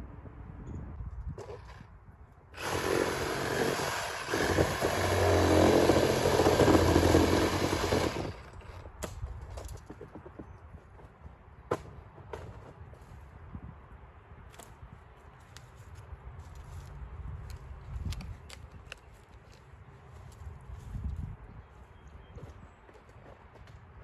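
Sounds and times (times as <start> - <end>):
chainsaw cutting: 2.6 - 8.8.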